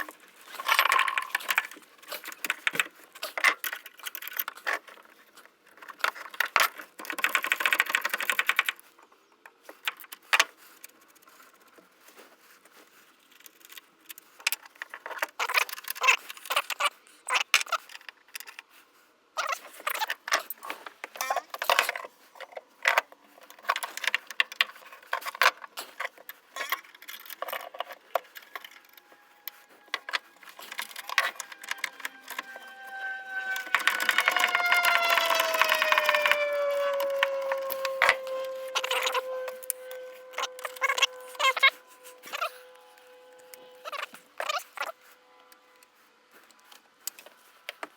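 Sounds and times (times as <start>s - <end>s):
metal tools clinking and rattling: 0.0s - 5.0s.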